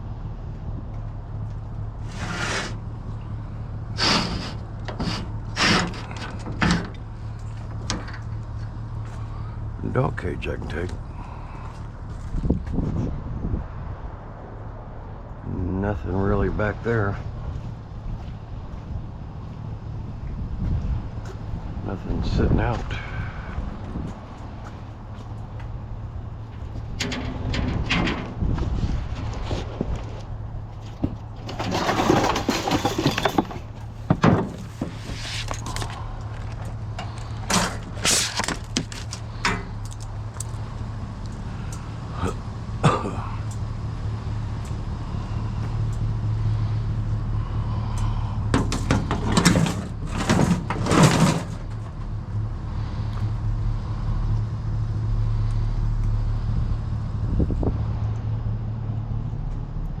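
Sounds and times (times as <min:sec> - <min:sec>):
vehicle engine idling: 0:00.0 - 1:00.0
metal scrap clattering: 0:04.0 - 0:08.3, 0:27.0 - 0:28.5, 0:30.8 - 0:40.0, 0:48.5 - 0:52.1.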